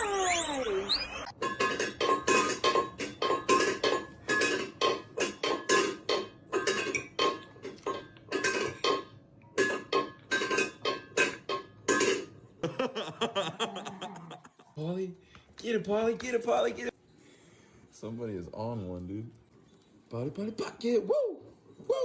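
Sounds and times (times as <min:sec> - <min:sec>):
metal pot being knocked: 0:01.4 - 0:12.4.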